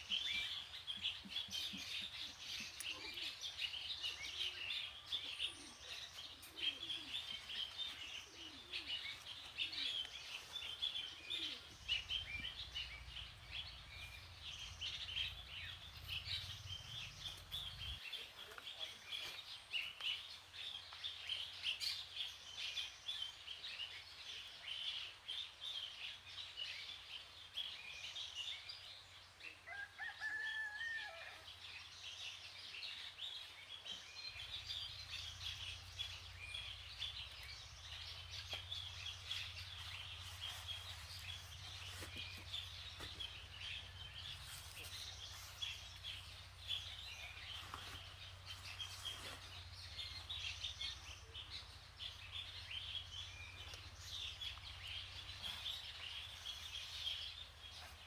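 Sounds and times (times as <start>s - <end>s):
rooster crowing: 29.7s - 31.5s.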